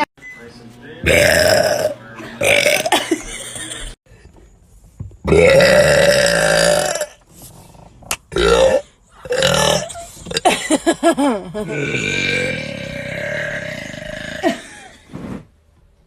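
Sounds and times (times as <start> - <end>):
person burping loudly: 1.1 - 3.1, 5.3 - 7.2, 8.3 - 10.5, 11.6 - 15.0.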